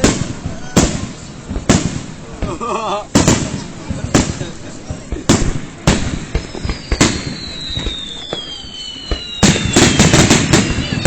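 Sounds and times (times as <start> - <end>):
firework whistles gliding down: 6.2 - 11.0.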